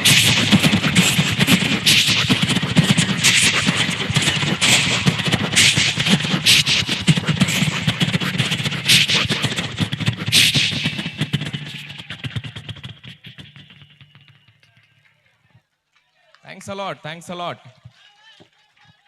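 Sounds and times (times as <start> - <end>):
man imitating a train: 0.0 - 14.8.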